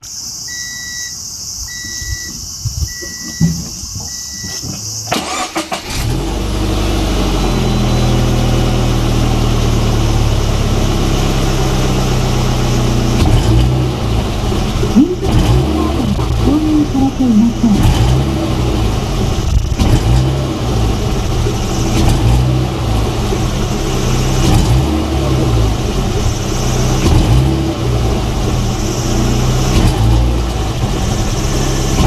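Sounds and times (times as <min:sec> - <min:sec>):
car electronic chime beeping: 0:00.5 - 0:02.3, 0:02.9 - 0:03.5, 0:04.1 - 0:05.4
car engine cranking and idling: 0:01.3 - 0:32.0.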